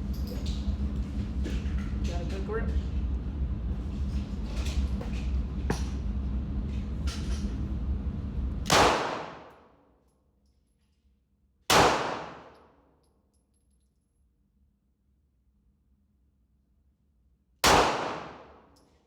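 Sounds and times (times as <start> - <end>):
low rumble with faint ticks: 0.0 - 8.8
gunshots with echo: 8.7 - 9.5, 11.7 - 12.6, 17.6 - 18.6.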